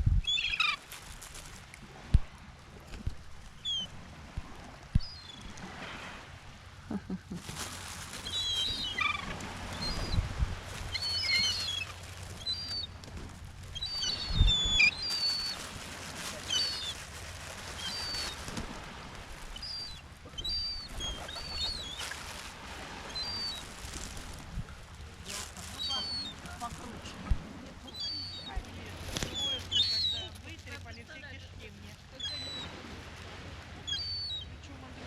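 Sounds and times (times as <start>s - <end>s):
small birds chirping: 0.2s - 0.9s, 4.9s - 5.5s, 7.5s - 13.0s, 13.6s - 18.6s, 19.4s - 22.4s, 23.0s - 24.1s, 25.2s - 32.8s, 33.8s - 34.6s.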